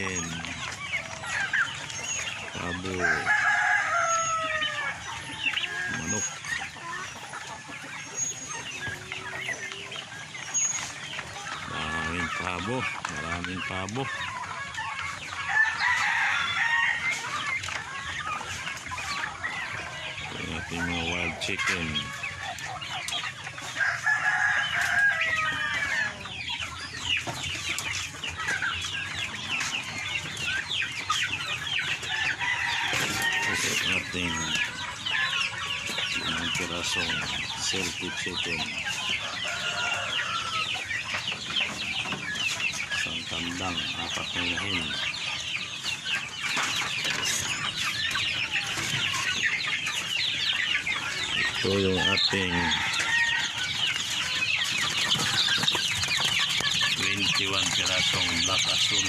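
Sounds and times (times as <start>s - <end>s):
chickens peeping and clucking: 0.0s - 59.0s
rooster crowing: 2.8s - 5.0s, 15.5s - 17.2s, 23.8s - 26.2s, 32.1s - 34.4s, 39.2s - 40.8s, 52.0s - 53.9s.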